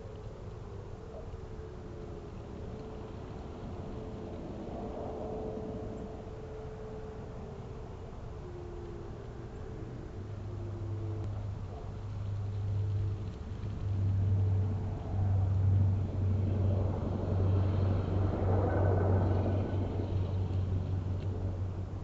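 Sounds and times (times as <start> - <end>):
steady low hum: 0.0 - 22.0
road vehicle passing: 9.9 - 22.0.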